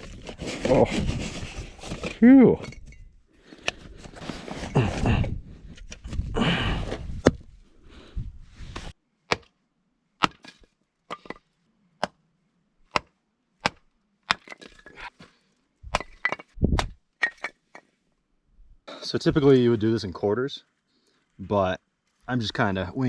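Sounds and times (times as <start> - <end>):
log being chopped: 9.3 - 9.5, 10.2 - 10.6, 12.9 - 14.4.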